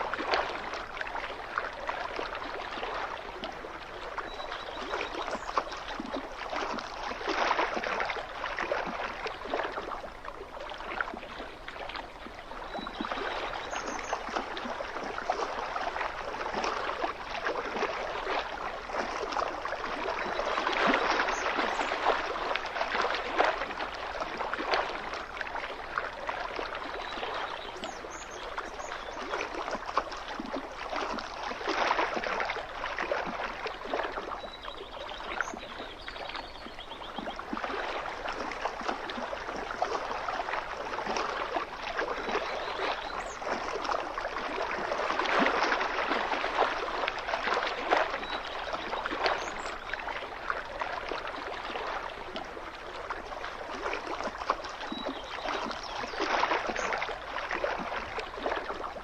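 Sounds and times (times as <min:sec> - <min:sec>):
small waves lapping on shore: 0:00.0 - 0:59.0.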